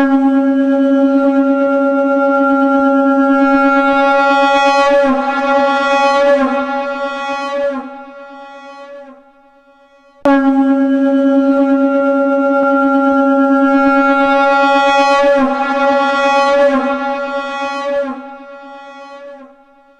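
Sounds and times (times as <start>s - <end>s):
conch shell long note: 0.0s - 19.9s.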